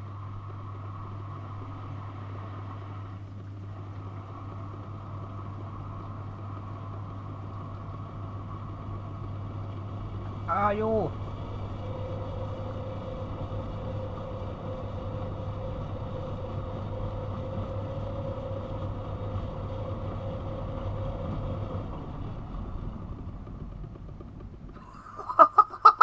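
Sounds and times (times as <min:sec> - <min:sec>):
washing machine whine: 0:00.0 - 0:26.0
washing machine hum: 0:08.2 - 0:23.6, 0:24.7 - 0:26.0.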